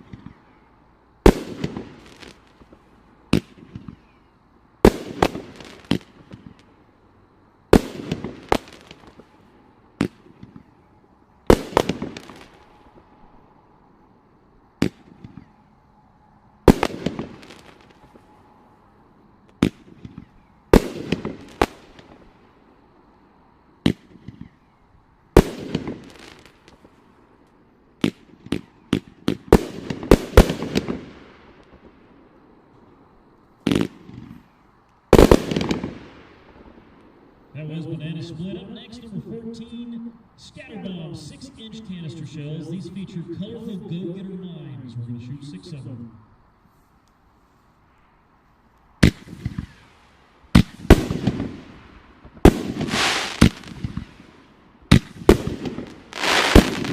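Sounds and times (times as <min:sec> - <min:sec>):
firework pops and crackle: 0:00.0 - 0:00.4, 0:04.8 - 0:06.7, 0:14.8 - 0:15.5, 0:25.4 - 0:31.9, 0:33.7 - 0:34.5, 0:35.2 - 0:37.1, 0:48.8 - 0:56.9
firework shots: 0:00.0 - 0:00.6, 0:01.2 - 0:04.2, 0:04.8 - 0:06.8, 0:07.7 - 0:13.2, 0:14.8 - 0:15.6, 0:16.6 - 0:18.4, 0:19.5 - 0:22.6, 0:23.8 - 0:24.7, 0:25.3 - 0:32.6, 0:33.6 - 0:46.1, 0:49.0 - 0:56.9.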